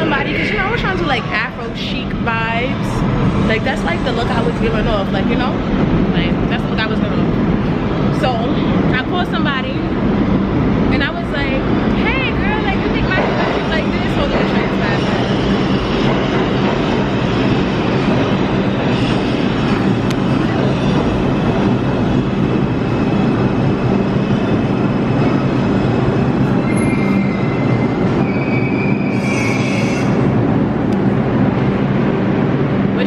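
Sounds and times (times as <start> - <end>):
subway train running: 0.0 - 33.0
wheels squealing on rails: 26.4 - 30.4.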